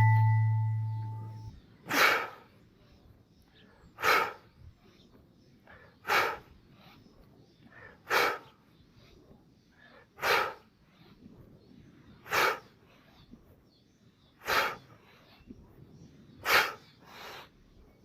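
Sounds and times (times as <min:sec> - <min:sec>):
person breathing hard: 0:04.0 - 0:04.6, 0:05.6 - 0:07.1, 0:07.7 - 0:08.5, 0:09.8 - 0:11.2, 0:12.2 - 0:13.2, 0:14.4 - 0:15.4, 0:16.4 - 0:17.6.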